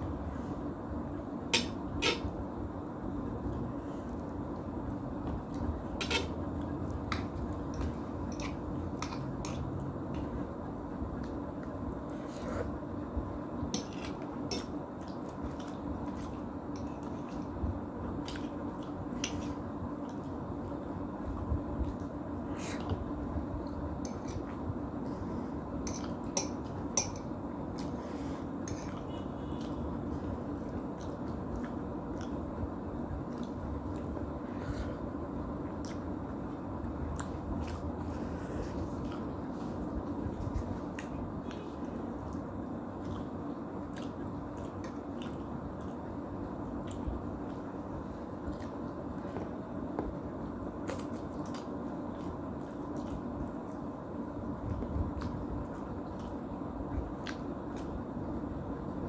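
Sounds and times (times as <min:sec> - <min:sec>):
low background hum: 0:00.0 - 0:59.0
person chewing noodles: 0:33.2 - 0:46.1, 0:48.4 - 0:49.4.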